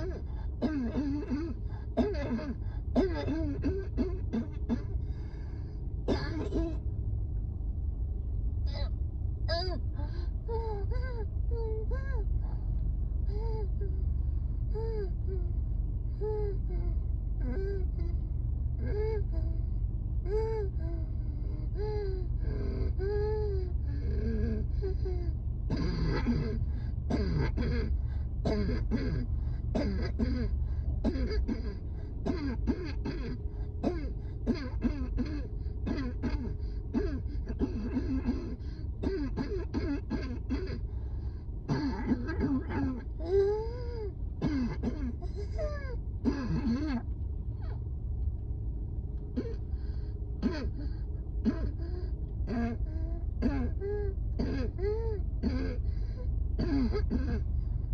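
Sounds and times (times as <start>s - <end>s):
person coughing: 0.0s - 5.0s, 6.1s - 6.8s, 25.7s - 27.9s, 28.5s - 29.2s, 29.8s - 40.8s, 41.7s - 43.1s, 44.4s - 45.4s, 46.2s - 47.0s, 50.4s - 50.8s, 54.4s - 55.8s, 56.6s - 57.5s
low steady rumble: 0.0s - 57.9s
person clearing throat: 0.6s - 5.0s, 6.1s - 6.8s, 25.7s - 27.9s, 28.5s - 29.2s, 29.8s - 40.8s, 41.7s - 43.1s, 54.4s - 54.8s, 56.6s - 57.5s.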